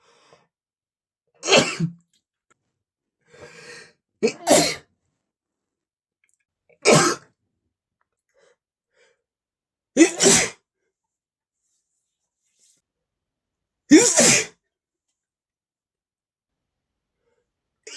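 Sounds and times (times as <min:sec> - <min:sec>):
man sneezing: 0:01.4 - 0:02.0, 0:04.2 - 0:04.8, 0:06.8 - 0:07.2, 0:10.0 - 0:10.6, 0:13.9 - 0:14.6.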